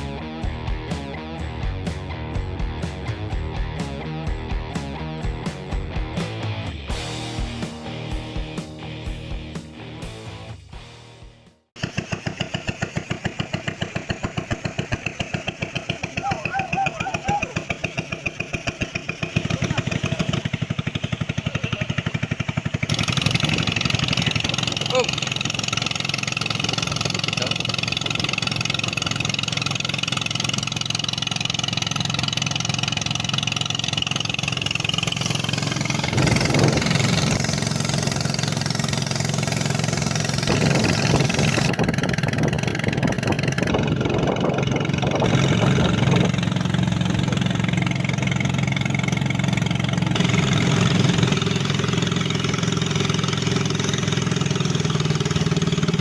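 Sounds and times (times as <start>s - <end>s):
boat engine running: 11.8s - 56.0s.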